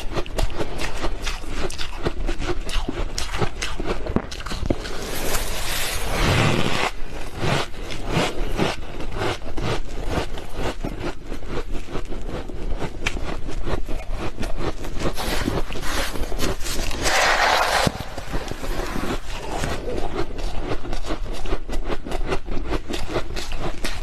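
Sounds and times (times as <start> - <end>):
chewing crisp squeaky frost: 0.1 - 17.5, 18.2 - 24.0
rasping sound: 4.6 - 21.6.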